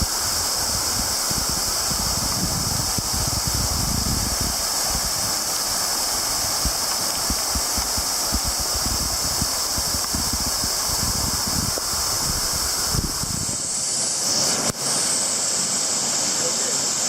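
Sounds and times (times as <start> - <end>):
low thumps of falling water: 0.0 - 13.4
waterfall rushing: 0.0 - 17.0.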